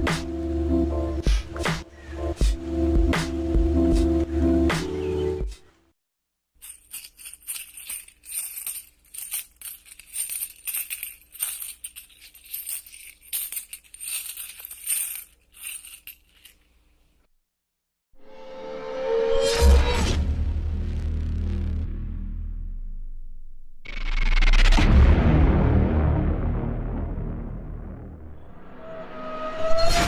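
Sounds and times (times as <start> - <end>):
coins jingling: 6.6 - 16.9.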